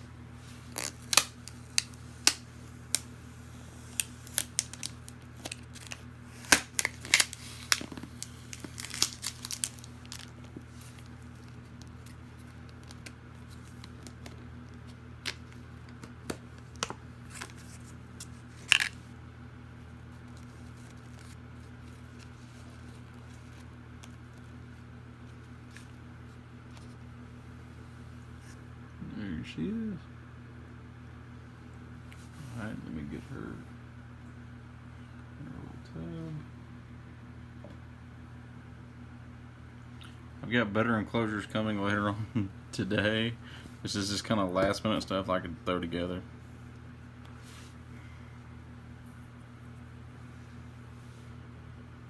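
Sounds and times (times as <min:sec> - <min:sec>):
packaging tearing and crinkling: 0:00.4 - 0:19.1.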